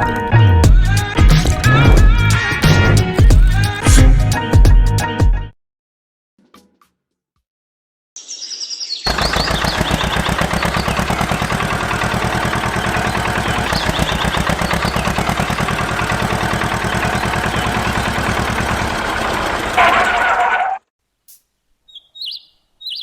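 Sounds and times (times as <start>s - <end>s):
engine running with knocking beat: 0.6s - 4.8s, 9.1s - 20.2s
birds chirping: 8.2s - 20.4s, 21.8s - 23.0s.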